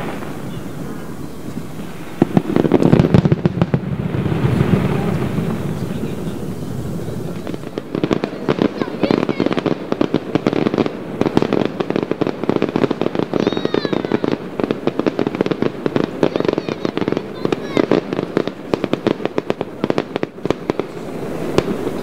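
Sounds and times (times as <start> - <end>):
fireworks crackling: 0.0 - 22.0.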